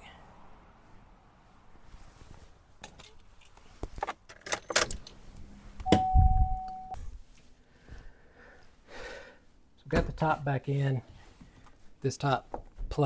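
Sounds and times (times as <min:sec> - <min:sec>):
steady electronic beep: 0:05.8 - 0:07.0.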